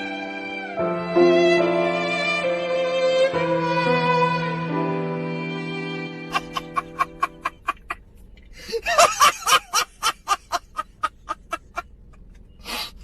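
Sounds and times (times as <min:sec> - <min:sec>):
rapid laughter: 0:06.3 - 0:13.0.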